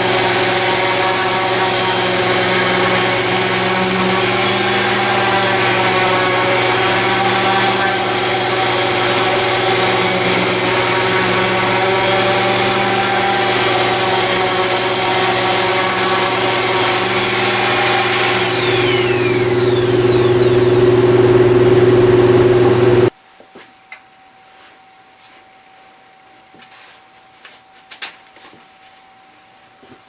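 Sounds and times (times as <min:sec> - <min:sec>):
orbital sander motor whining: 0:00.0 - 0:23.1.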